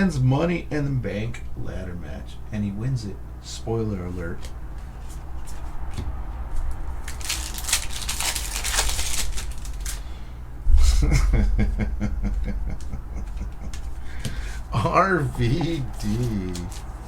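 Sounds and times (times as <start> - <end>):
cards rustling: 6.6 - 10.2, 15.2 - 17.0.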